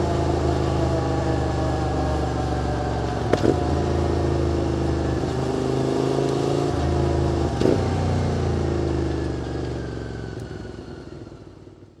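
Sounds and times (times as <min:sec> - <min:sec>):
motorcycle engine running: 0:02.7 - 0:11.9.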